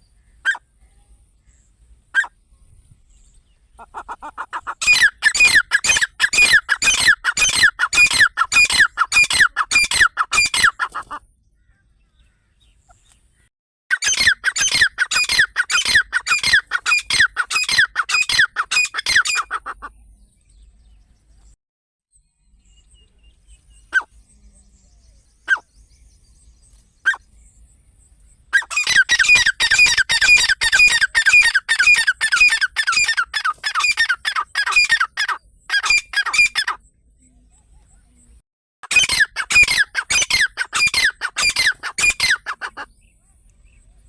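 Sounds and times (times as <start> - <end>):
partridge calling: 0.0 - 0.6, 3.7 - 13.2, 13.9 - 20.0, 25.4 - 25.7, 27.0 - 27.2, 28.5 - 36.8, 38.9 - 43.1.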